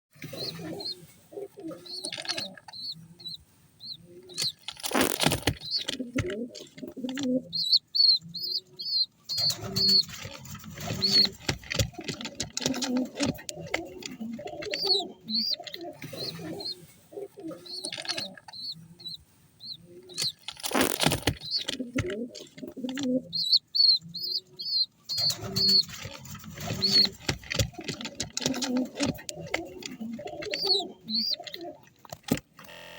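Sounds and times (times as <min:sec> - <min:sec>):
low pigeon cooing: 0:00.2 - 0:03.4, 0:05.6 - 0:11.4, 0:12.0 - 0:19.2, 0:21.4 - 0:31.9
pigeon squabs peeping: 0:00.2 - 0:31.9
loud rustling: 0:04.5 - 0:05.9, 0:20.2 - 0:21.8.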